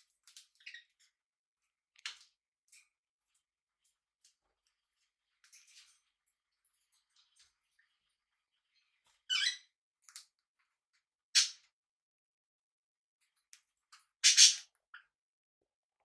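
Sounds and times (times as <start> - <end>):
parrots giving scratchy calls: 14.2 - 14.7.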